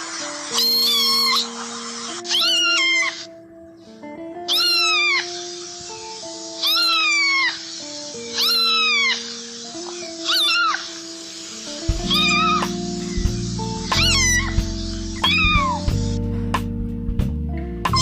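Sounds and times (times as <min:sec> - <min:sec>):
cat meowing: 0:00.0 - 0:03.4, 0:04.4 - 0:05.6, 0:06.6 - 0:11.2, 0:12.0 - 0:13.2, 0:13.8 - 0:16.0
background music: 0:00.0 - 0:18.0.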